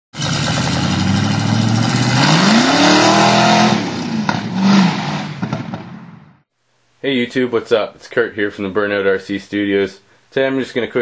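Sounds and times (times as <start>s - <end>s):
engine revving: 0.2s - 6.3s
loud rushing noise: 1.8s - 6.4s.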